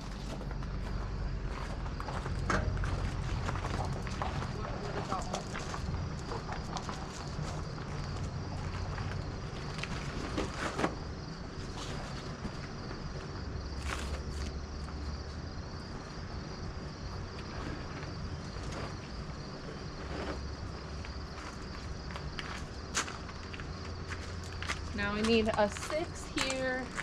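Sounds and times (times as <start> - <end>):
footsteps on gravel: 0.0 - 10.6, 17.7 - 27.0.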